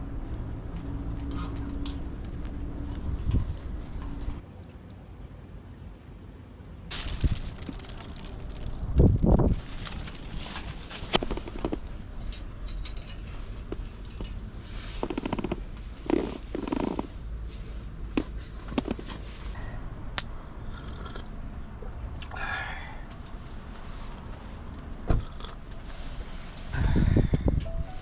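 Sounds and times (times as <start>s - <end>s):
steady low rumble: 0.0s - 28.0s.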